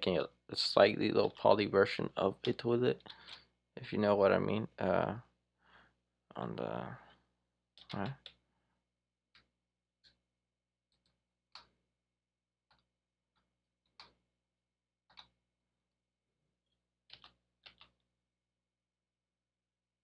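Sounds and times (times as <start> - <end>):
keyboard and mouse clicking: 7.8 - 8.4, 15.1 - 15.4, 17.1 - 18.0.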